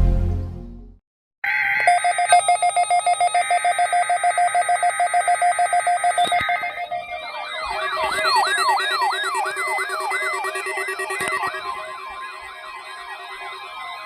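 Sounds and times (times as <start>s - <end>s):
pulsing electronic alarm tone: 1.8s - 14.0s
siren-like wail: 5.0s - 14.0s
steady higher tones: 6.5s - 14.0s.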